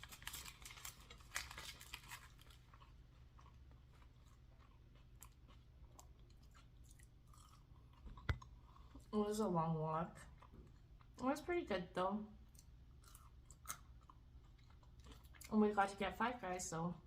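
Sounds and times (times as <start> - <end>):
faint close-up chewing: 0.0 - 9.2, 10.2 - 11.2, 12.4 - 15.6.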